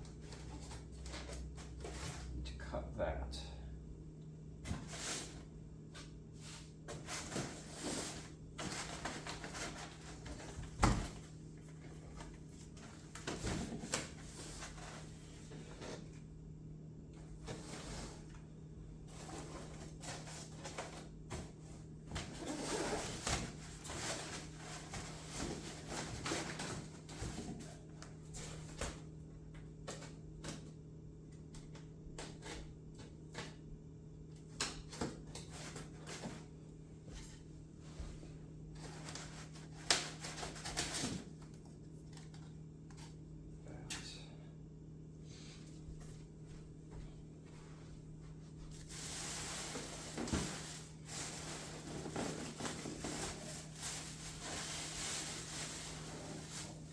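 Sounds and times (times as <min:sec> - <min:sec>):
steady low hum: 0:00.0 - 0:56.9
packaging rustling and knocking: 0:48.8 - 0:56.9.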